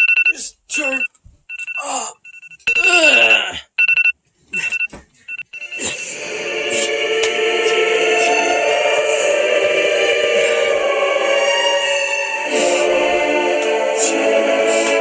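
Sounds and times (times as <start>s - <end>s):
phone alarm beeps: 0.0s - 6.1s
choral music: 5.6s - 15.0s.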